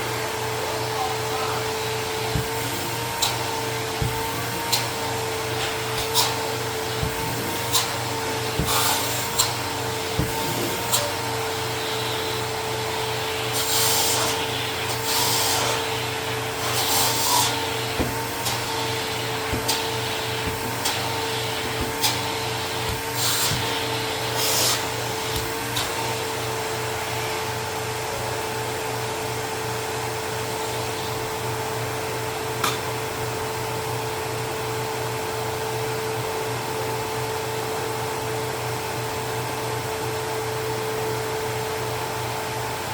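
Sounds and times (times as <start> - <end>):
vacuum cleaner motor whine: 0.0 - 42.9.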